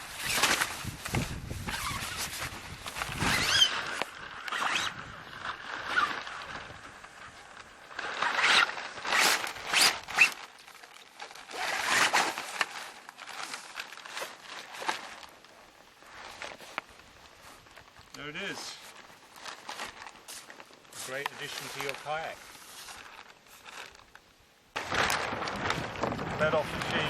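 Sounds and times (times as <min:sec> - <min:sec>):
bag and sail rustling: 0:00.0 - 0:24.2, 0:24.8 - 0:27.0
zipper pulls: 0:00.1 - 0:06.4, 0:08.0 - 0:10.5, 0:11.4 - 0:12.9.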